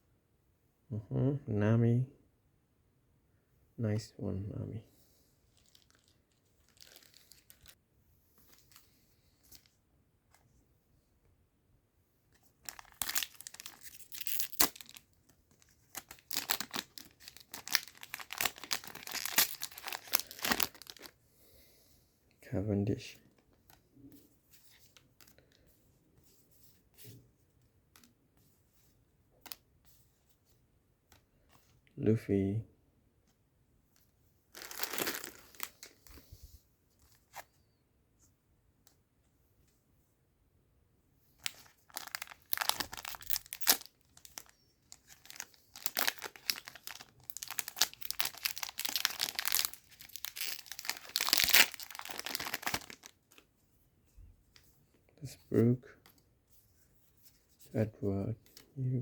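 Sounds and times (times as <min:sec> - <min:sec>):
foil wrapper crinkling and tearing: 0:05.5 - 0:07.8, 0:12.7 - 0:21.1, 0:34.6 - 0:35.9, 0:41.4 - 0:53.4.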